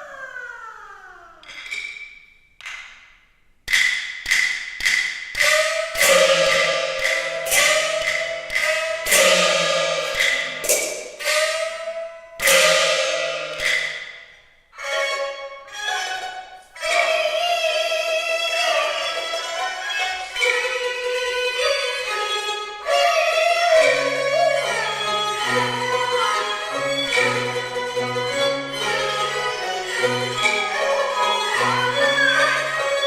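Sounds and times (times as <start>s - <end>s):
sharp percussion strokes ringing: 4.1s - 15.4s, 20.3s - 33.0s
bowed fiddle notes: 5.4s - 14.0s, 14.8s - 33.0s.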